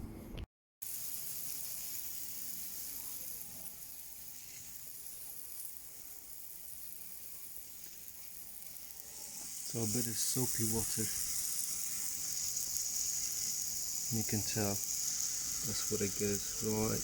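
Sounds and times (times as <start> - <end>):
water spraying over car body: 9.5 - 17.0.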